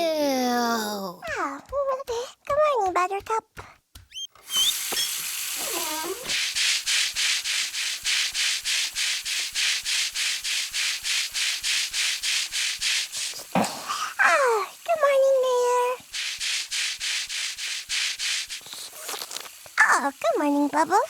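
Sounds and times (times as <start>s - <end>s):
brush scrubbing strokes: 4.4s - 21.0s
steady hiss: 4.4s - 21.0s.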